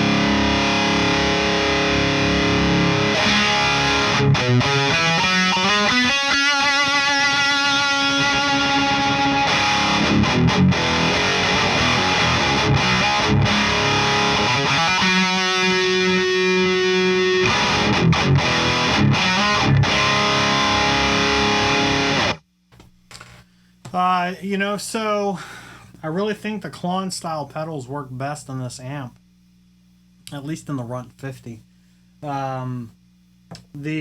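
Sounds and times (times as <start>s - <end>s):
distorted electric guitar riffs: 0.0s - 22.5s.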